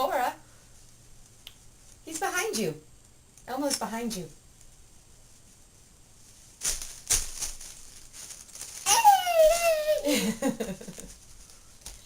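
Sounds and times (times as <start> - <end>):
toddler squealing: 8.9 - 10.1.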